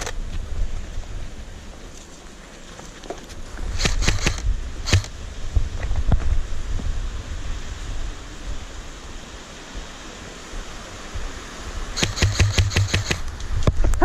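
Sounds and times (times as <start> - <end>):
wind buffeting microphone: 3.4 - 14.0
airsoft gunfire cracks: 3.8 - 5.1, 12.0 - 13.3.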